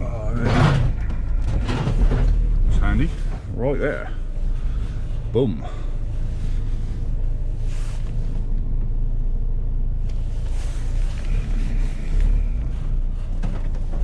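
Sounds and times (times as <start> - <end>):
van engine and road rumble: 0.0 - 14.0.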